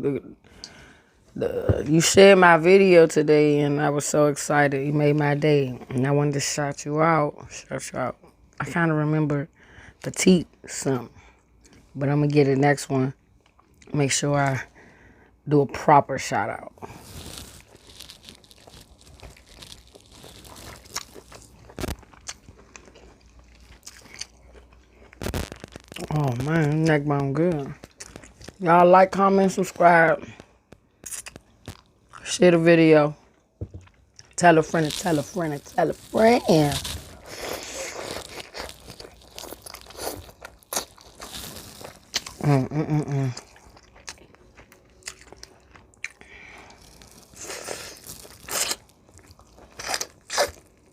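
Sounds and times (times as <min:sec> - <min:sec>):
person chewing meat: 0:17.0 - 0:26.0, 0:35.7 - 0:42.4, 0:43.0 - 0:50.9
wet mouth noises: 0:31.0 - 0:31.8.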